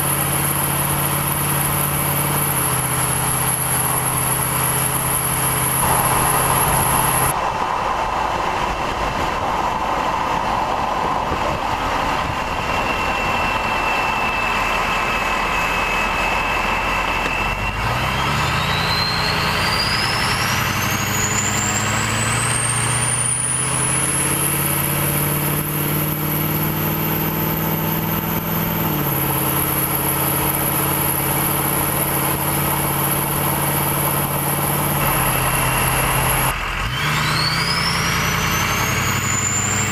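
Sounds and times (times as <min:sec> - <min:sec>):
diesel engine running: 0:00.0 - 0:39.9
turbo whistle: 0:12.5 - 0:24.9, 0:27.6 - 0:36.6, 0:37.2 - 0:39.9.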